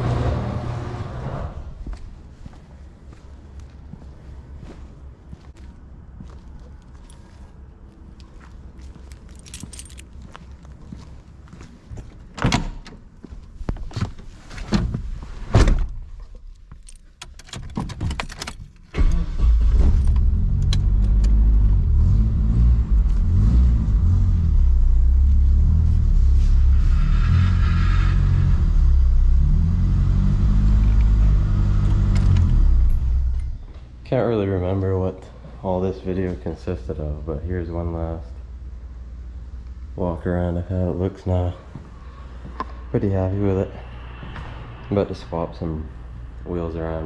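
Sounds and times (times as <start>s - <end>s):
car engine starting and running: 0.0s - 2.0s, 16.6s - 34.0s
jangling: 9.0s - 10.5s.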